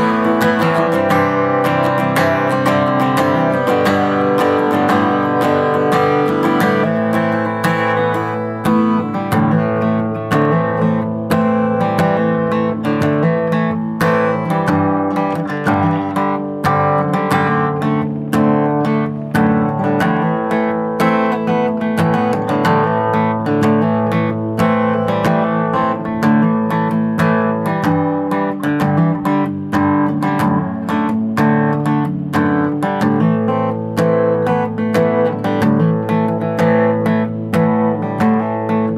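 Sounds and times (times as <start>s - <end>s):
acoustic guitar picked and strummed: 0.0s - 38.9s.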